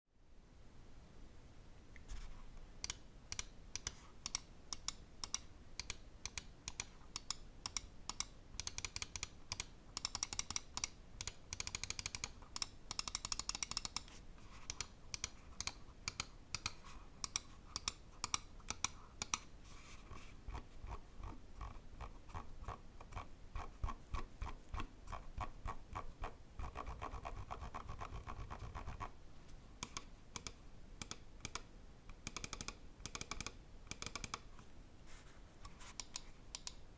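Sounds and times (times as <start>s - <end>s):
mouse clicking: 2.8s - 19.5s, 29.8s - 34.7s, 35.6s - 36.8s.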